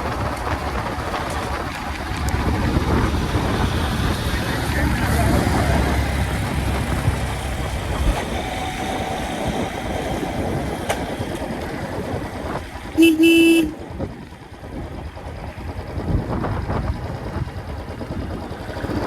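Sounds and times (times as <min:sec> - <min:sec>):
motorcycle engine running: 0:00.0 - 0:19.0
road and wind noise: 0:00.0 - 0:19.0
vehicle horn blast: 0:13.0 - 0:13.8.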